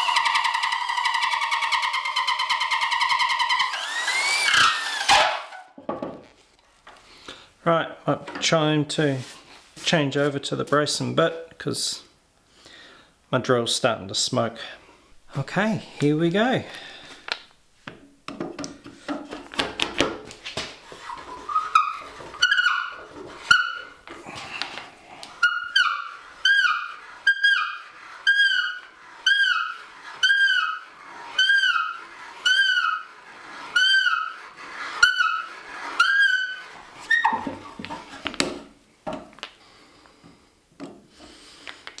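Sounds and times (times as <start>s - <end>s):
auger bit rasping into wood: 0.0s - 5.6s, 20.9s - 38.3s
hand brace crank squeaking: 0.0s - 5.6s, 21.0s - 33.1s, 33.7s - 38.4s.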